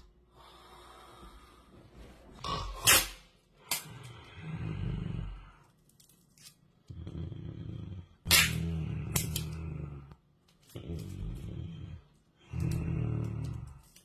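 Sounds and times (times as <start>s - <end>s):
person snoring loudly: 3.9s - 5.6s, 6.9s - 10.2s, 10.8s - 13.8s.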